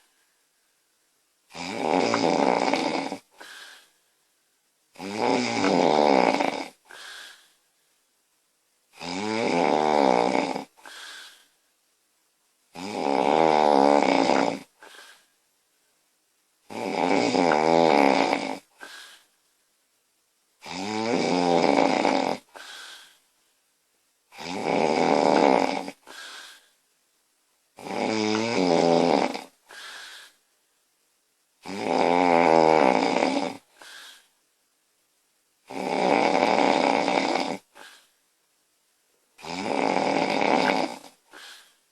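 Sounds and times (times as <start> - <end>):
woman snoring loudly: 1.5 - 3.9, 5.0 - 7.4, 8.9 - 11.4, 12.7 - 15.2, 16.7 - 19.2, 20.6 - 23.1, 24.3 - 26.6, 27.8 - 30.4, 31.6 - 34.2, 35.6 - 38.1, 39.4 - 41.7
soft breath: 3.3 - 4.2, 6.8 - 7.7, 10.8 - 11.6, 14.8 - 15.4, 18.7 - 19.4, 22.5 - 23.3, 26.0 - 26.8, 29.6 - 30.5, 33.7 - 34.4, 41.1 - 41.9.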